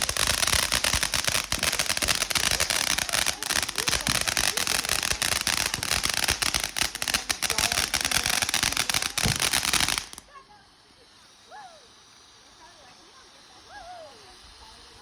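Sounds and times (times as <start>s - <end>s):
fireworks crackling: 0.0s - 15.0s.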